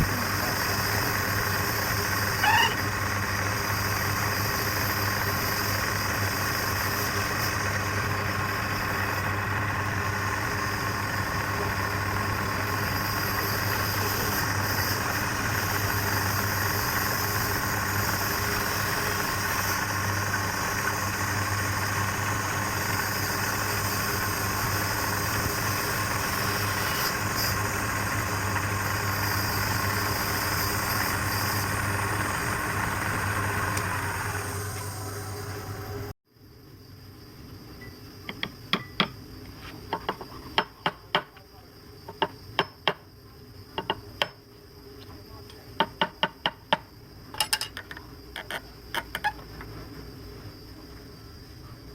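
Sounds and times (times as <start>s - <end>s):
wood lathe humming: 0.0s - 36.2s.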